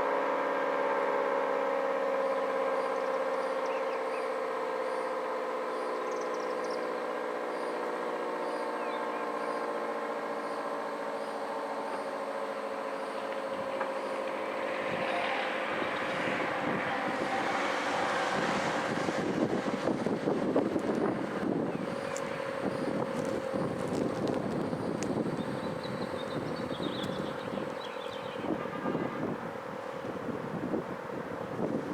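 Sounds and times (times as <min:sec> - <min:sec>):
two-tone warning siren: 0:00.0 - 0:31.9
wind noise on microphone: 0:14.8 - 0:31.9.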